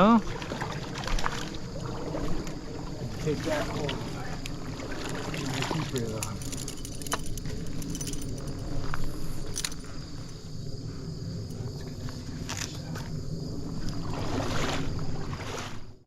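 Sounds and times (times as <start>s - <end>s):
stream water rushing: 0.0s - 10.4s.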